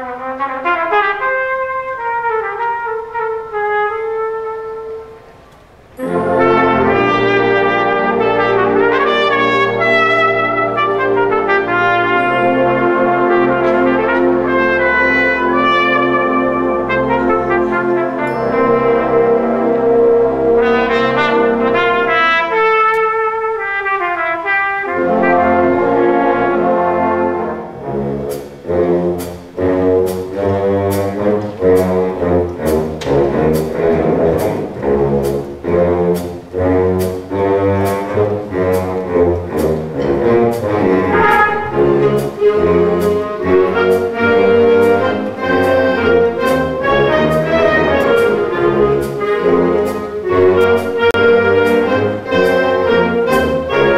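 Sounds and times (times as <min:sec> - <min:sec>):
trumpet solo: 0:00.0 - 0:05.3, 0:06.0 - 0:53.9
concert band playing: 0:06.0 - 0:53.9
percussion beat: 0:38.8 - 0:52.7.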